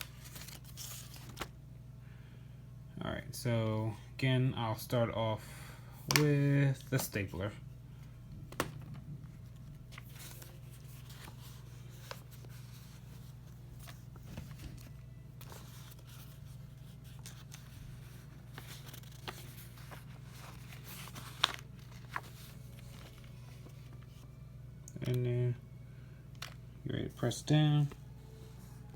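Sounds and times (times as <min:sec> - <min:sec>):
soft clicks and paper rustles: 0:00.0 - 0:01.6, 0:08.4 - 0:24.3
steady low hum: 0:00.0 - 0:28.9.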